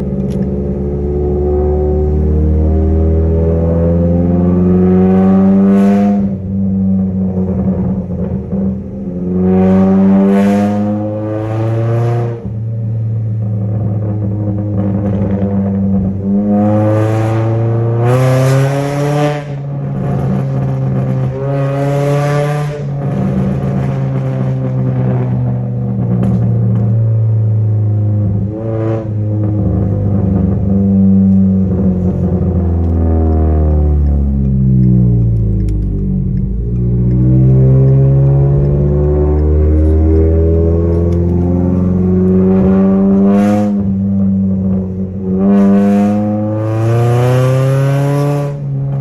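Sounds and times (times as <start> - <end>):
car engine revving: 0.0 - 49.0
exhaust pops and crackles: 13.3 - 16.3, 19.8 - 21.4, 22.8 - 27.3.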